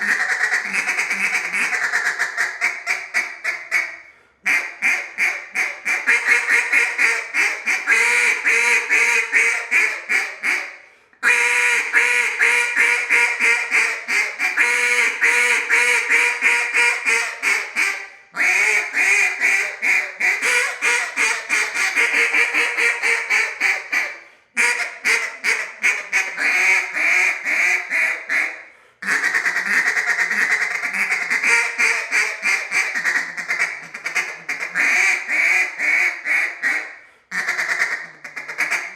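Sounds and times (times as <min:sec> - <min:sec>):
duck call hen quacks: 0:00.0 - 0:38.9.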